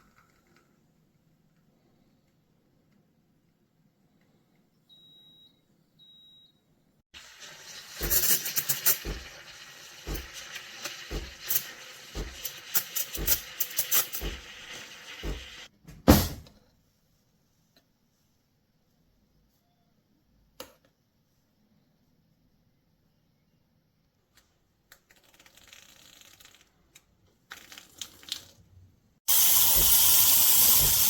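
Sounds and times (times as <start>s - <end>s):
espresso machine hissing: 29.3s - 31.0s.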